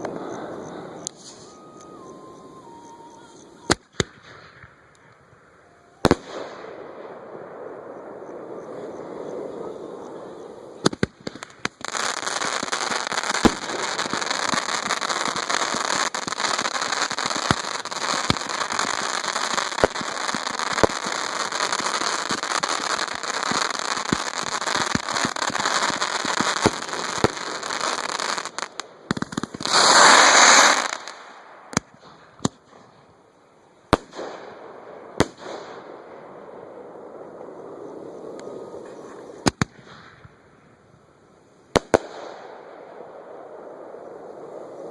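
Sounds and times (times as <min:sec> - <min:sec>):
fireworks bangs: 0:06.0 - 0:33.1, 0:33.9 - 0:40.4, 0:41.7 - 0:44.9
fireworks hissing: 0:10.9 - 0:32.0.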